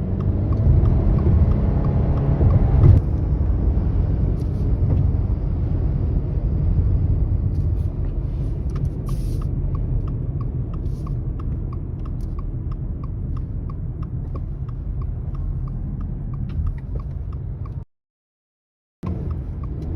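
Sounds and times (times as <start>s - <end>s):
wind and road noise in car: 0.0s - 17.8s, 19.0s - 19.9s
car indicator ticking: 0.1s - 2.8s, 8.7s - 17.8s, 19.1s - 19.9s.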